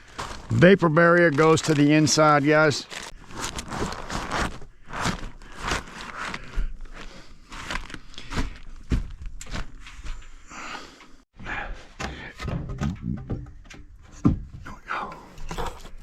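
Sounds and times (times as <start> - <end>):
rustling and scuffing: 1.3 - 10.4.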